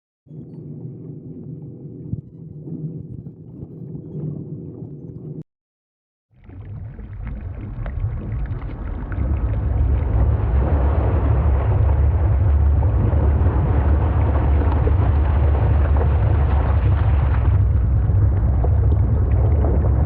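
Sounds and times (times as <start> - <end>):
heavy rushing water: 6.4 - 20.0.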